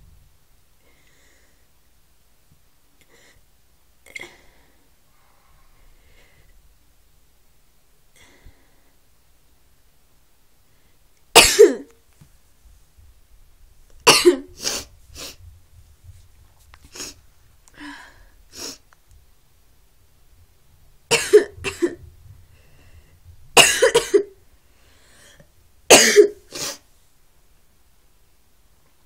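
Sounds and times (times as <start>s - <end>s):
person coughing: 11.4s - 11.9s, 14.1s - 14.9s, 21.1s - 22.0s, 23.6s - 24.4s, 25.9s - 26.8s.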